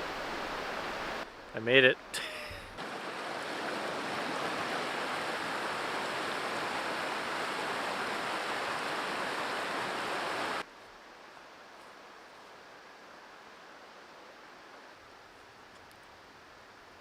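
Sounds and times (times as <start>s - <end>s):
stream water rushing: 0.0s - 10.7s.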